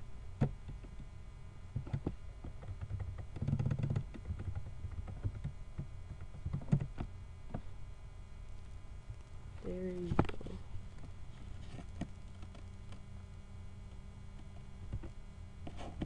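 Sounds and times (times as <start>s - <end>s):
computer keyboard key clicks: 1.8s - 7.1s.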